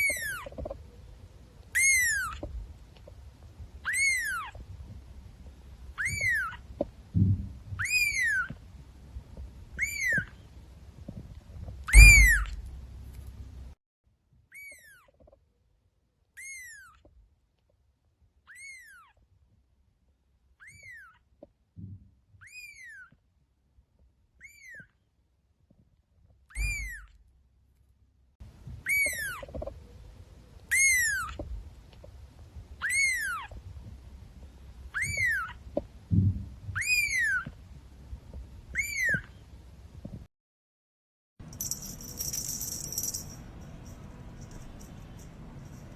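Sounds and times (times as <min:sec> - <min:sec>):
kitten meowing: 0:01.7 - 0:02.5, 0:03.8 - 0:04.6, 0:05.9 - 0:06.6, 0:07.8 - 0:08.6, 0:09.8 - 0:10.4, 0:11.8 - 0:12.7, 0:26.6 - 0:27.1, 0:28.8 - 0:29.8, 0:30.7 - 0:31.5, 0:32.7 - 0:34.0, 0:34.8 - 0:35.8, 0:36.7 - 0:37.6, 0:38.7 - 0:39.4.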